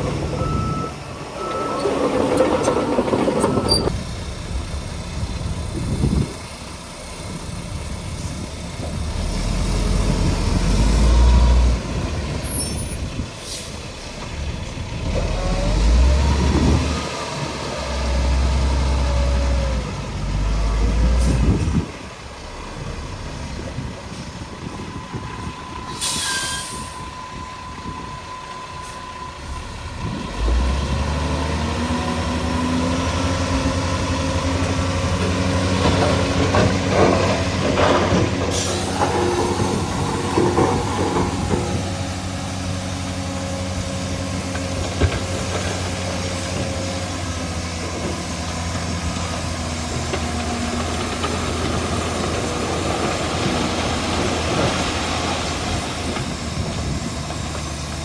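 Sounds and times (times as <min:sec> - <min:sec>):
diesel machinery engines: 0:00.0 - 0:58.0
metallic clanking and squealing: 0:01.4 - 0:04.0, 0:24.8 - 0:28.0, 0:35.8 - 0:42.6.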